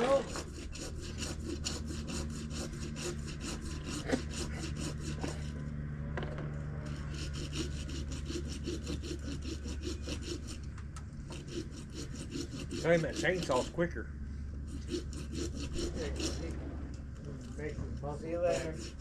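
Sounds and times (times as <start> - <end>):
handsaw cutting wood: 0.0 - 5.7, 6.8 - 13.9, 14.6 - 16.6, 17.4 - 19.0
steady low hum: 0.0 - 19.0.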